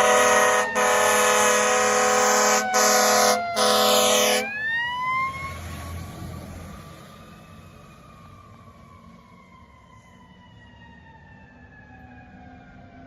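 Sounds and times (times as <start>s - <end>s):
fire truck air horn: 0.0s - 4.6s.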